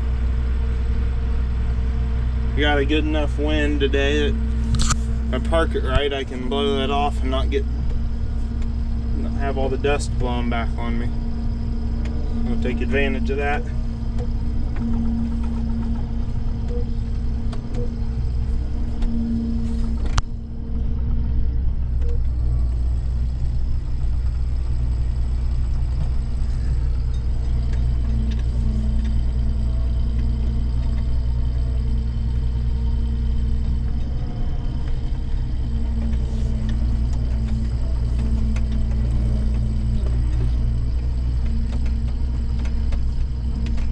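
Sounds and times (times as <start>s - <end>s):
diesel engine rumbling: 0.0s - 43.9s
sharp click: 4.7s - 5.0s.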